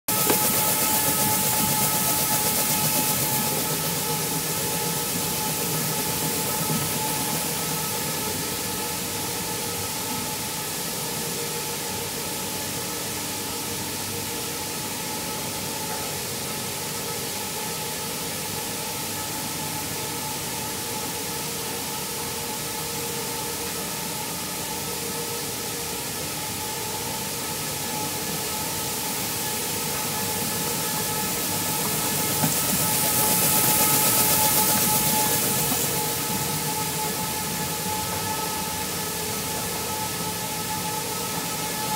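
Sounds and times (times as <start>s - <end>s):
mill machinery humming: 0.1s - 9.6s, 26.4s - 41.9s.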